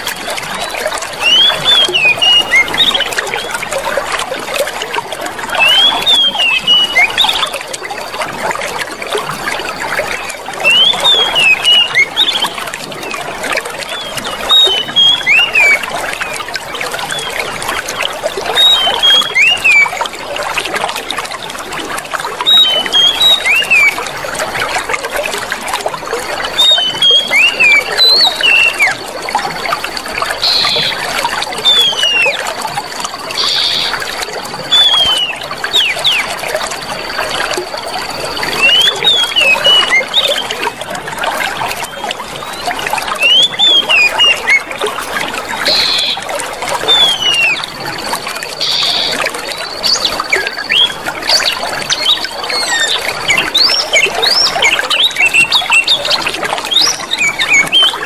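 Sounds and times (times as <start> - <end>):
water trickling: 0.0 - 58.0
small birds chirping: 0.3 - 3.6, 5.5 - 7.7, 10.1 - 13.2, 13.8 - 17.6, 18.4 - 20.0, 22.4 - 24.0, 26.5 - 29.1, 29.8 - 40.7, 41.6 - 44.9, 45.5 - 58.0.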